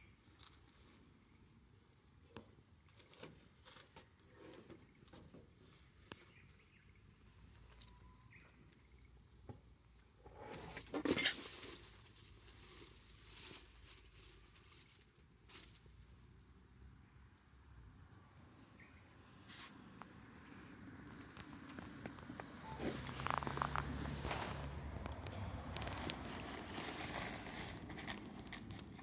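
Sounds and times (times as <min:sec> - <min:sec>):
campfire crackling: 0:21.4 - 0:29.0.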